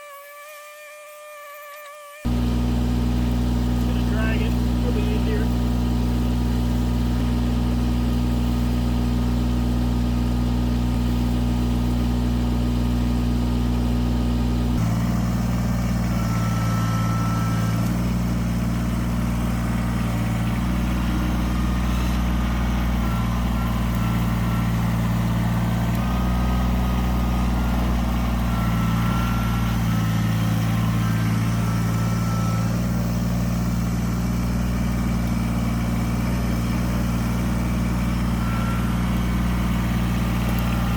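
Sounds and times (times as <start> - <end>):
faint whines: 2.3 - 8.7, 14.7 - 40.9
tractor diesel engine running: 2.3 - 40.9.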